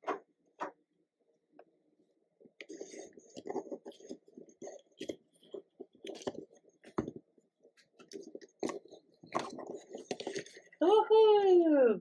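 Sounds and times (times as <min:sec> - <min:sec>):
soft handling noise: 0:01.6 - 0:10.9
plastic toys knocking and rattling: 0:02.8 - 0:07.3, 0:08.0 - 0:10.8.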